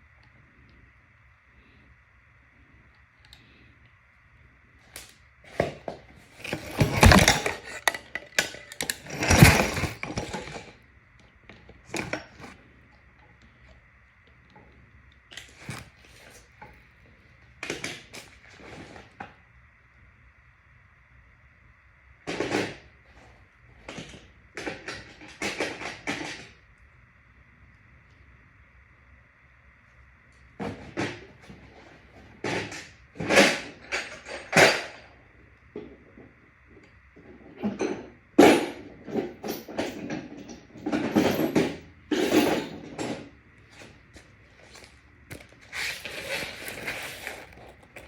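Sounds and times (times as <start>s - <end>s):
scraping and rustling handling noises: 4.9s - 10.8s, 39.0s - 48.0s
knocks and clunks of bike parts: 5.5s - 10.8s, 37.6s - 48.0s.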